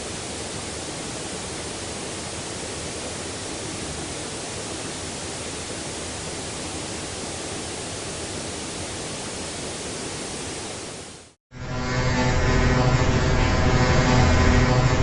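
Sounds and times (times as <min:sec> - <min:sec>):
steady rushing hiss: 0:00.0 - 0:11.4.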